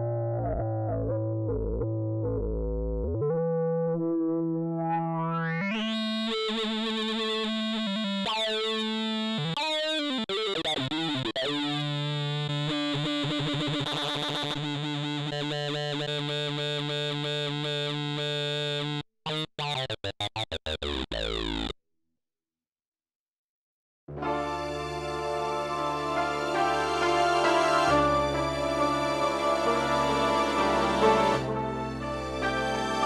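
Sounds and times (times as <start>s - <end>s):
synthesizer sweeping chords: 24.1s - 33.0s.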